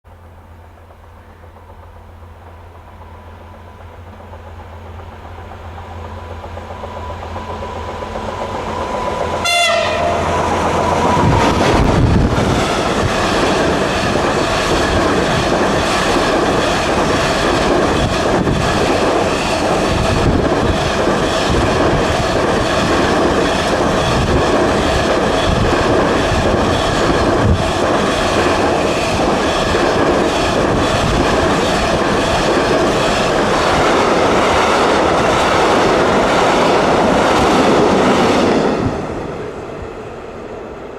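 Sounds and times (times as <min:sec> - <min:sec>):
diesel locomotive engine: 0:00.1 - 0:40.9
train horn blast: 0:08.7 - 0:11.6.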